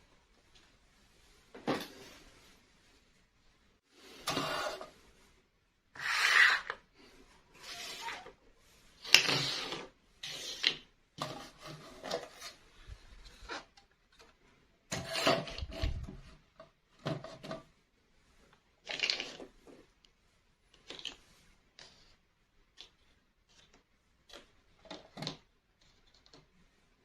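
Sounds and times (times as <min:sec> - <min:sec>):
plastic pieces rubbing and scraping: 0:06.0 - 0:17.7, 0:18.8 - 0:20.0, 0:20.7 - 0:27.0.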